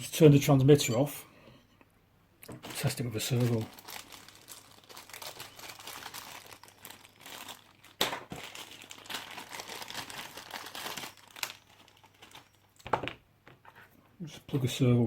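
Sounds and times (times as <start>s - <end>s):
crinkling rustling handling noise: 2.5s - 13.1s.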